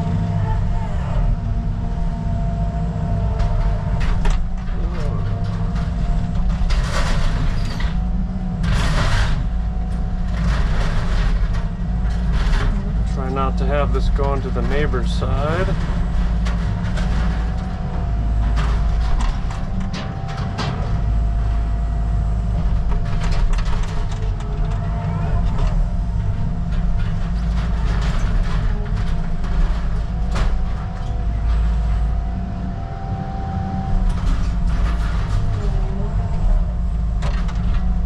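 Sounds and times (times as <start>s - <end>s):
excavator engine drone: 0.0s - 38.0s
debris cracking and snapping: 3.5s - 21.4s, 22.5s - 31.6s.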